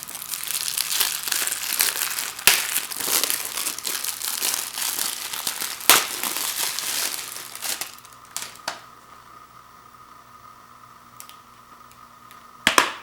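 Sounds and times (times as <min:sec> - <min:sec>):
plastic wrap crinkling: 0:00.0 - 0:08.9.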